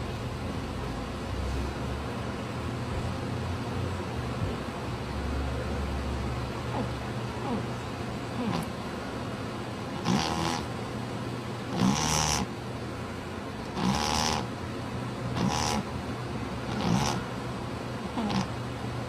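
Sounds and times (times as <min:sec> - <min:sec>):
rattling snores: 0:06.7 - 0:07.7, 0:08.4 - 0:08.7, 0:10.0 - 0:10.7, 0:11.7 - 0:12.5, 0:13.7 - 0:14.5, 0:15.3 - 0:15.9, 0:16.7 - 0:17.3, 0:18.1 - 0:18.6.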